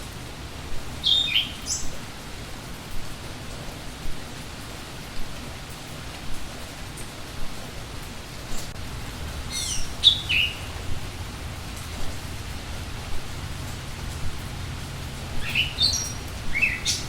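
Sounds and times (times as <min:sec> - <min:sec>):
louder raindrops landing: 0:00.0 - 0:17.0
steady rain: 0:00.0 - 0:17.0
bird calling: 0:09.5 - 0:10.8, 0:15.4 - 0:17.0.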